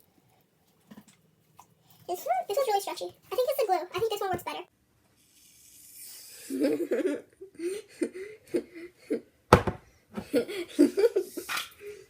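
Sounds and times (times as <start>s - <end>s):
people laughing: 6.5s - 9.2s.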